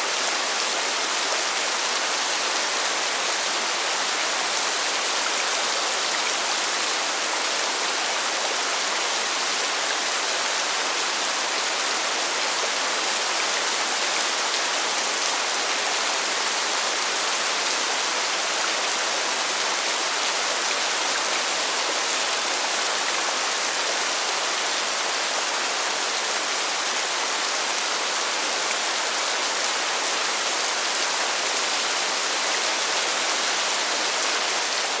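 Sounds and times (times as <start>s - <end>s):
heavy rainfall: 0.0s - 35.0s.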